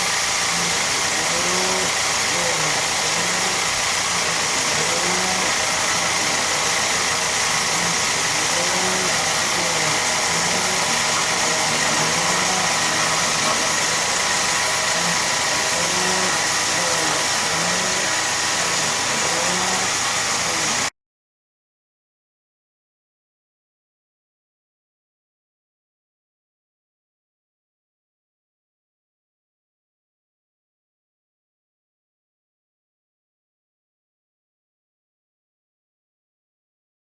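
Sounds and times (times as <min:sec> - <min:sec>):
milling machine running: 0:00.0 - 0:20.9.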